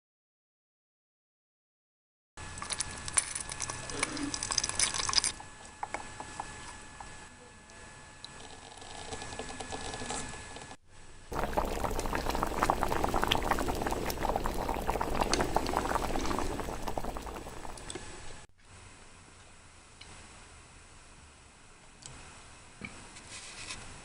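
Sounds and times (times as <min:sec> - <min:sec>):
liquid bubbling at a rolling boil: 0:11.3 - 0:18.4.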